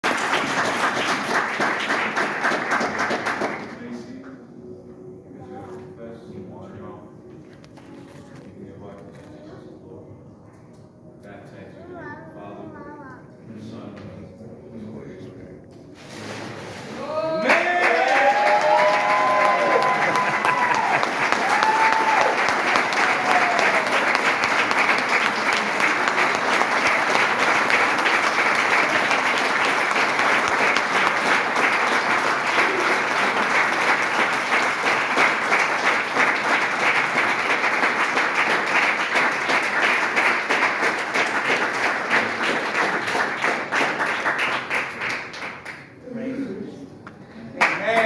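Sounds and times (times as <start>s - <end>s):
congregation clapping: 0.0s - 4.0s, 17.4s - 46.0s, 47.6s - 48.0s.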